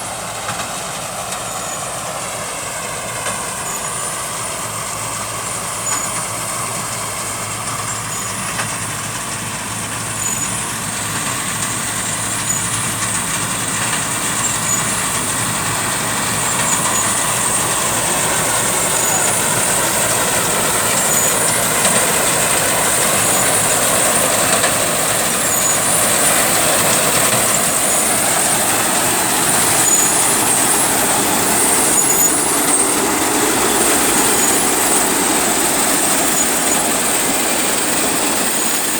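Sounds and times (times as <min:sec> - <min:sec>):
combine harvester engine running: 0:00.0 - 0:38.9.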